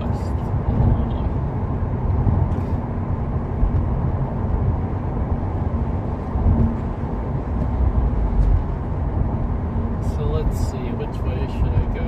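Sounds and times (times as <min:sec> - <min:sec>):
car engine and tyres rumbling: 0:00.0 - 0:12.0.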